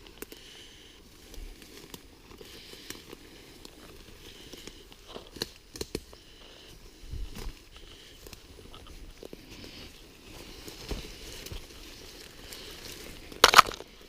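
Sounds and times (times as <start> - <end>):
twigs snapping: 0.0 - 0.5, 1.3 - 6.2, 10.5 - 14.0.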